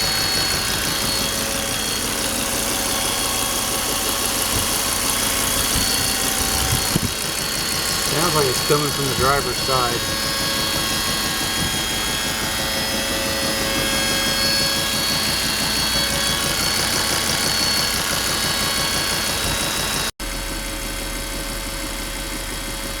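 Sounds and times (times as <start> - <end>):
car idling with high buzz: 0.0 - 23.0.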